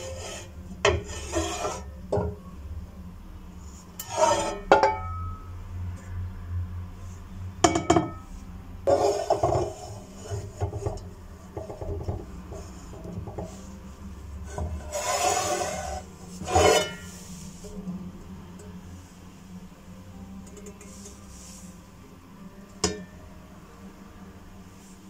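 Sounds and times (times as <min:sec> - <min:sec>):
scraping noises: 0:00.0 - 0:02.2, 0:03.6 - 0:04.8, 0:08.4 - 0:19.2, 0:20.5 - 0:22.2
hard objects knocking: 0:09.2 - 0:13.6.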